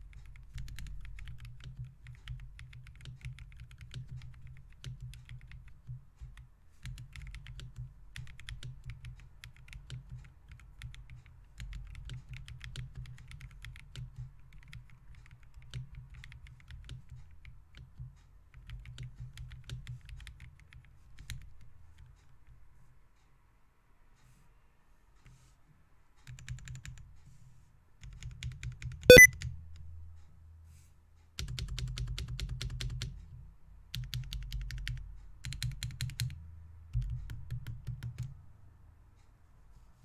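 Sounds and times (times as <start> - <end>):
mechanical keyboard typing: 6.8 - 9.7.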